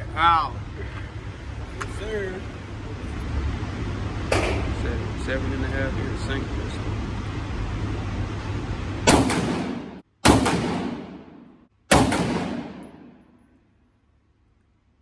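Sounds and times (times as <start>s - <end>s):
gunshots with echo: 9.1s - 13.4s.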